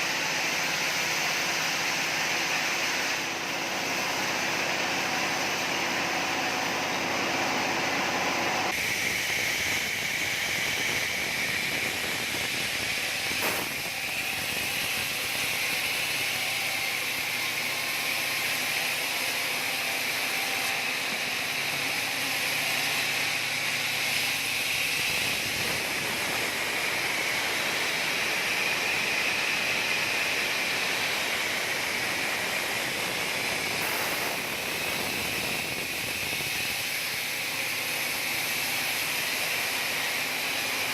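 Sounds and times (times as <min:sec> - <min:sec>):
sawmill saw whining: 0:00.0 - 0:40.9.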